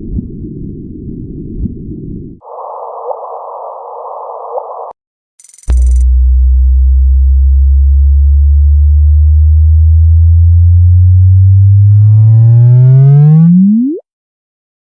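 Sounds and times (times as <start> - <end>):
deep hum rising in pitch: 5.7 - 14.0.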